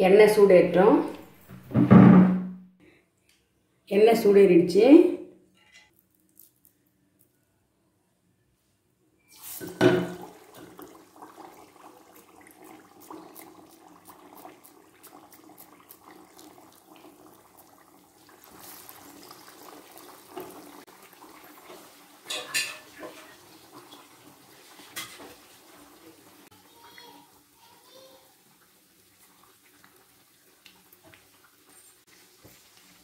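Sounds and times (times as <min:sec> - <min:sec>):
food deep-frying in oil: 0:09.3 - 0:33.0.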